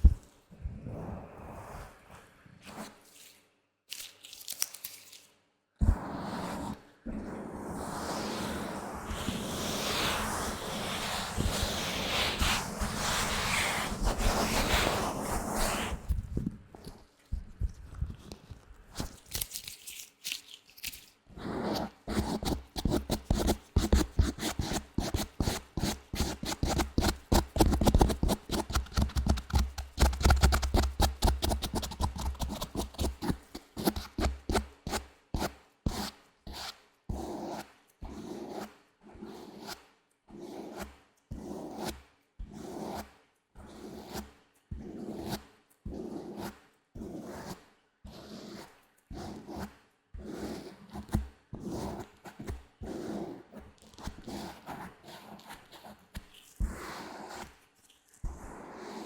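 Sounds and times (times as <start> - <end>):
latex gloves rubbing: 7.5 - 24.1, 26.8 - 34.2.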